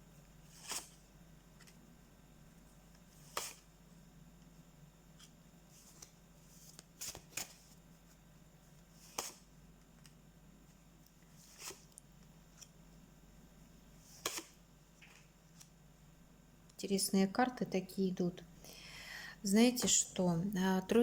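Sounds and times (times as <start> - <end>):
faint steady hum: 0.0 - 21.0
cards slapping and rustling: 0.5 - 1.8, 3.1 - 3.7, 5.2 - 7.8, 9.0 - 10.2, 11.3 - 12.7, 14.0 - 15.8.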